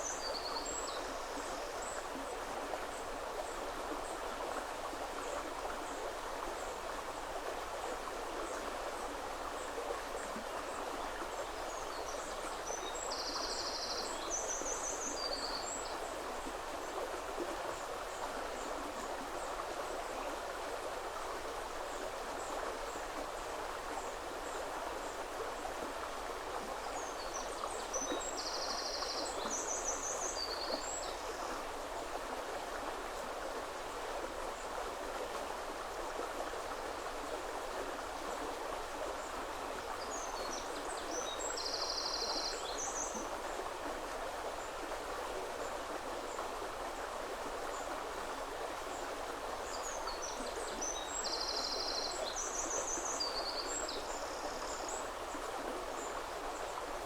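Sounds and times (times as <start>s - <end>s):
river water flowing: 0.0s - 57.0s.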